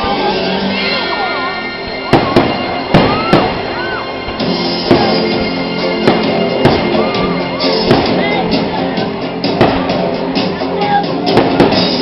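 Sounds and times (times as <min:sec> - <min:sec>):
music playing: 0:00.0 - 0:12.0
fireworks bangs: 0:01.8 - 0:08.8, 0:09.4 - 0:10.1, 0:11.2 - 0:12.0.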